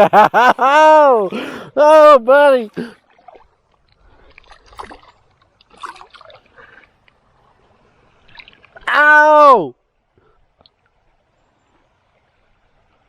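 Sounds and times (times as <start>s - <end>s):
small water splashes: 2.7s - 9.2s.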